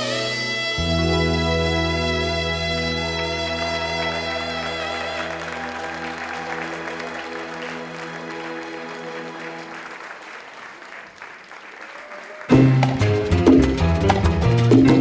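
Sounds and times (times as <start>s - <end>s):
held chord of live music: 0.0s - 10.0s
audience applauding: 3.0s - 13.1s
upbeat latin dance music: 12.5s - 15.0s.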